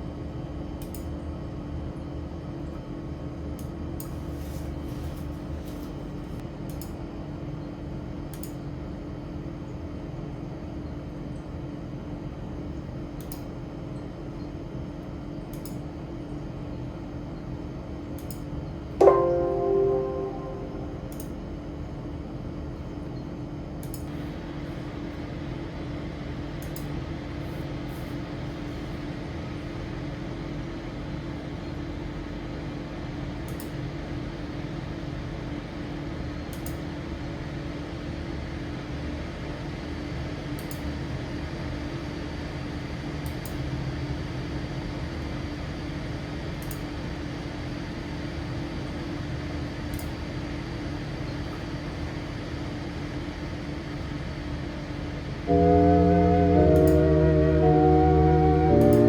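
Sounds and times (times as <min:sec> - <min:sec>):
machine hum: 0:55.5 - 0:59.0.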